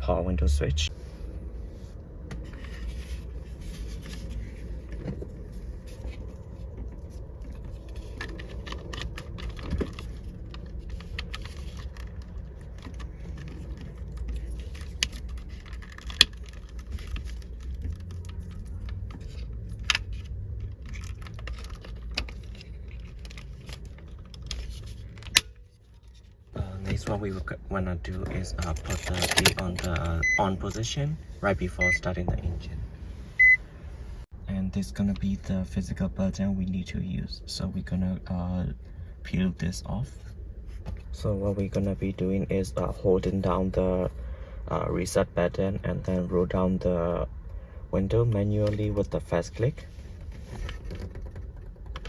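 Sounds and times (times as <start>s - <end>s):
steady low hum: 0.0s - 50.9s
plastic and wire rattling: 2.4s - 27.2s, 49.9s - 52.0s.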